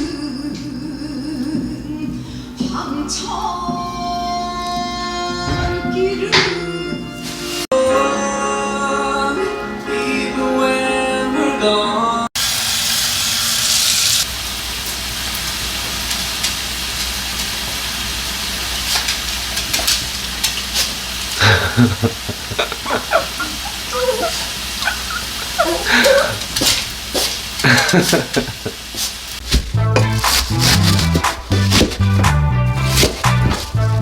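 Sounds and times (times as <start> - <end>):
background music: 0.0 - 12.3, 29.7 - 34.0
food sizzling: 7.2 - 7.7, 12.4 - 34.0.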